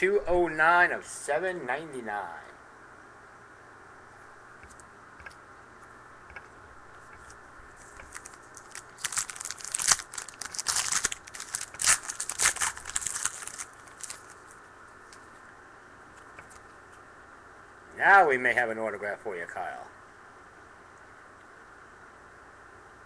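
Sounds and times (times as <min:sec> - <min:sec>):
wrapper tearing and crinkling: 0:07.8 - 0:14.5.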